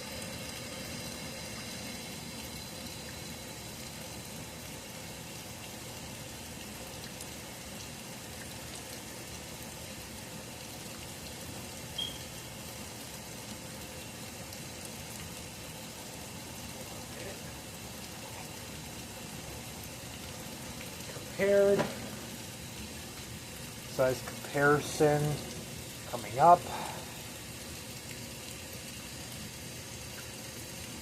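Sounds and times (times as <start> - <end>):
short high chirp: 12.0 - 12.3
steady background hiss: 15.8 - 29.5.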